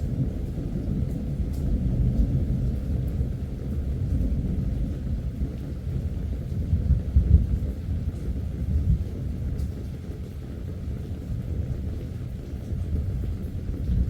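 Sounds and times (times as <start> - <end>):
rolling thunder rumble: 0.0 - 14.0.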